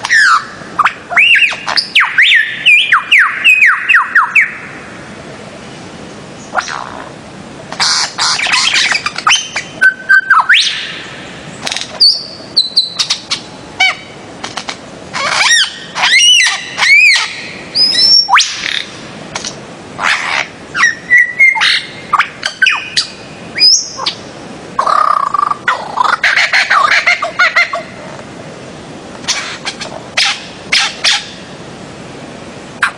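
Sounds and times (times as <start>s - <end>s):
birds calling with whistled notes: 0.0s - 5.0s, 5.8s - 7.0s, 7.8s - 14.3s, 15.0s - 28.0s, 29.2s - 31.6s.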